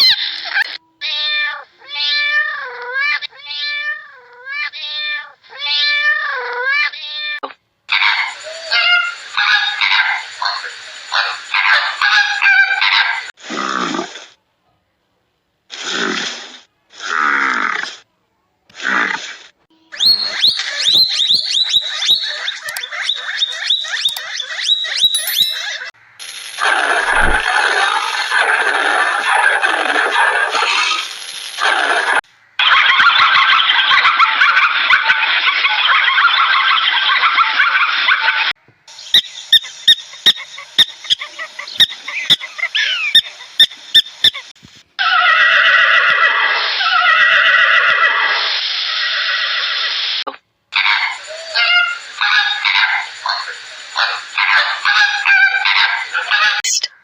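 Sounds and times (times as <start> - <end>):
animal chirping rapidly: 7.9 - 13.3, 19.9 - 26.0, 26.6 - 38.4, 39.0 - 48.1, 50.8 - 57.0
steady noisy hiss: 26.0 - 32.6.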